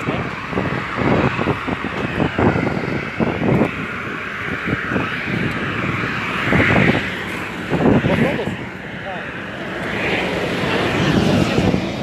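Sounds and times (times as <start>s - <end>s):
jet aircraft whine: 0.0s - 12.0s.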